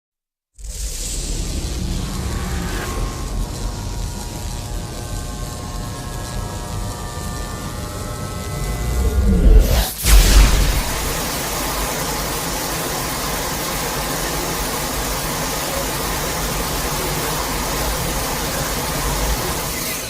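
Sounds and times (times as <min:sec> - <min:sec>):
rushing noise with deep rumble: 0:00.6 - 0:05.6, 0:08.5 - 0:11.7.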